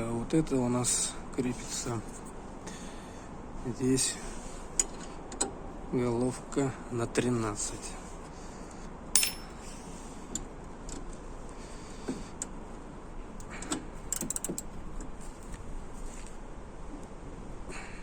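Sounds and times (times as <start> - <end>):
metallic clicks and rattles: 9.2 - 9.5, 14.1 - 14.7
socket ringing clink on metal: 9.2 - 9.6.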